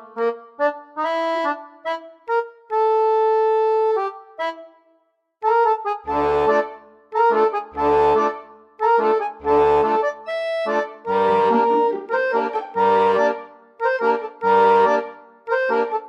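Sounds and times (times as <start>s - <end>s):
lively instrumental music: 0.0s - 16.0s.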